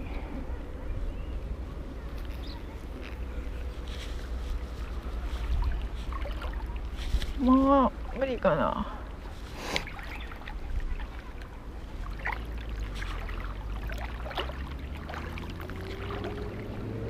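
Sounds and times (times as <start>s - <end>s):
river water running: 0.0s - 17.0s.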